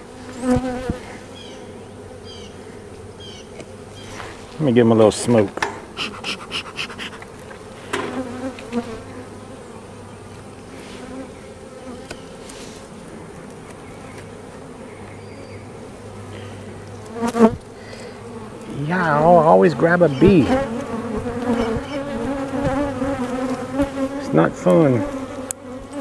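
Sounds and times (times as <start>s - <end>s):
bees buzzing: 0.0s - 26.0s
bellows smoker puffs: 5.6s - 8.3s.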